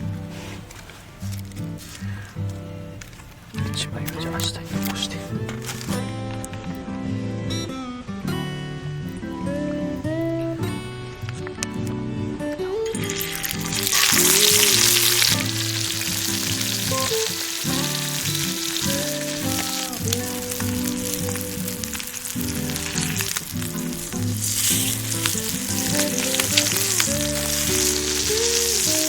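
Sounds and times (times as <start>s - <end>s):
food sizzling in a pan: 13.0s - 29.0s.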